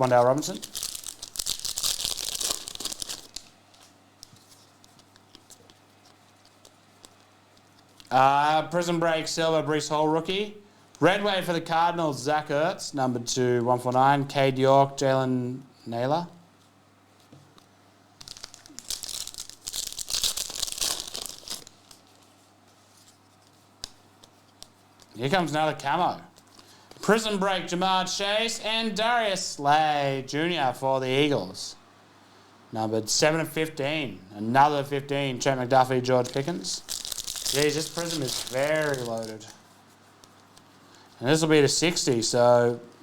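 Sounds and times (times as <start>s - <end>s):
plastic wrapper crinkling and tearing: 0.0s - 8.1s, 18.2s - 25.2s, 36.2s - 41.2s.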